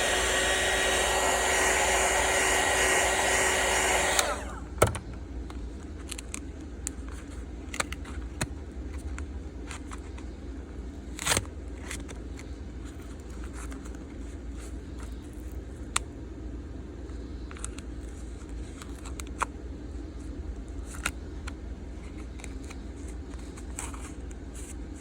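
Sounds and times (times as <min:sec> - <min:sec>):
hot-air blower running: 0:00.0 - 0:05.1.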